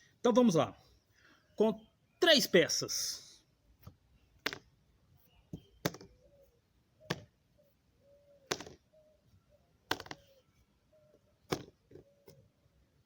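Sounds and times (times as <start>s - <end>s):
wooden puzzle pieces knocking: 3.8s - 4.8s, 5.5s - 6.2s, 7.1s - 7.3s, 8.5s - 8.9s, 9.9s - 10.4s, 11.5s - 12.1s.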